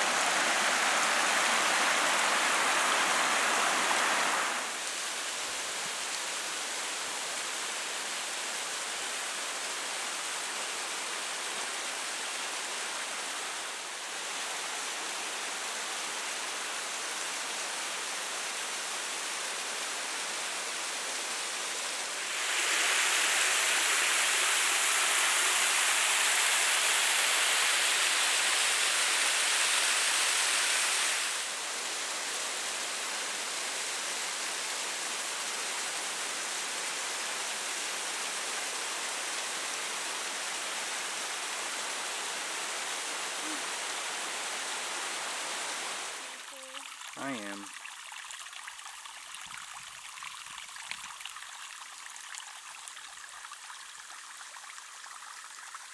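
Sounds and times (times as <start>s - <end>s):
waterfall rushing: 0.0s - 5.0s, 22.2s - 31.5s.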